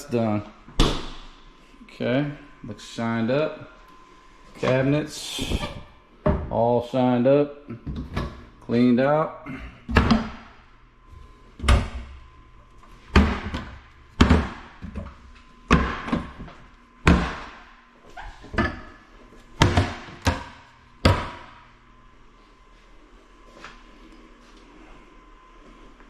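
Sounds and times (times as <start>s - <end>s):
cabinet doors banging shut: 13.1s - 14.7s, 15.7s - 16.4s.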